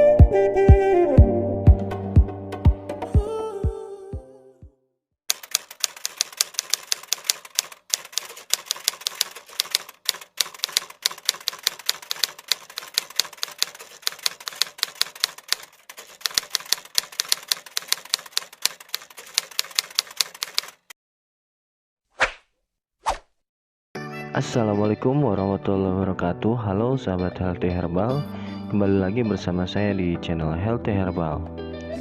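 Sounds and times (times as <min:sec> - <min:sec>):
typewriter key clicks: 0:05.3 - 0:20.9.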